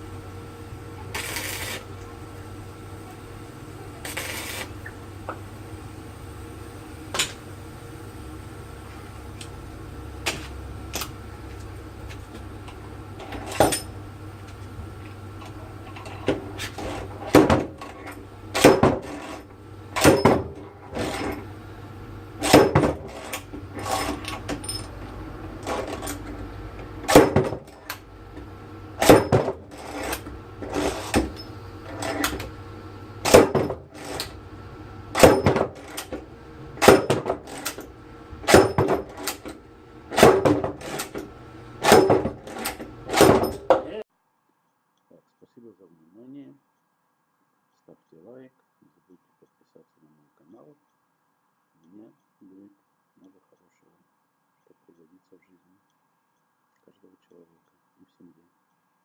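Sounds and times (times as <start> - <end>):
heavy metal-on-metal strikes: 18.5 - 19.3, 20.0 - 21.4, 22.4 - 24.9, 27.0 - 27.9, 29.0 - 31.4, 33.2 - 33.9, 35.1 - 36.0, 36.8 - 39.4, 40.1 - 44.0.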